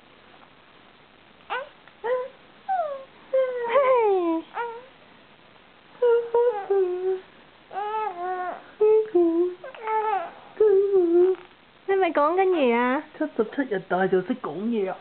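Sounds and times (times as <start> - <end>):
baby cooing: 1.5 - 4.9, 6.1 - 11.5.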